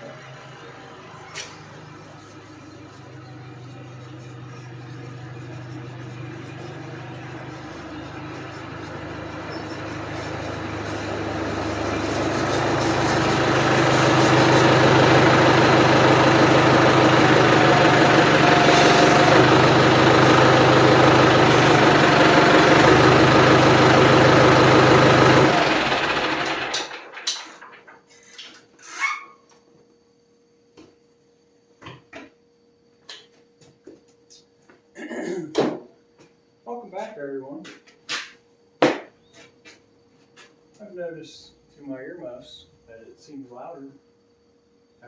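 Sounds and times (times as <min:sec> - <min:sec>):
diesel tractor engine running: 0:00.0 - 0:27.3.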